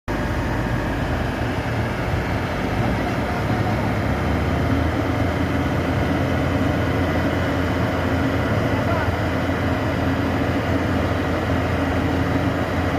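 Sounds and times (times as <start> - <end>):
diesel engines rumbling: 0.1 - 12.9.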